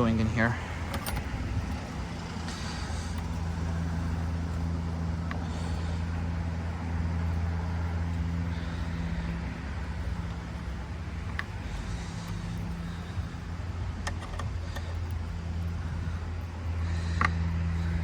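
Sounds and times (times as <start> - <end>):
vehicle engine humming: 0.0 - 18.0.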